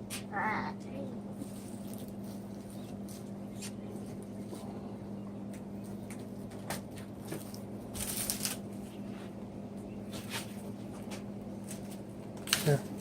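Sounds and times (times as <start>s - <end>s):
steady low hum: 0.0s - 13.0s
plastic wrap crinkling: 7.5s - 8.6s.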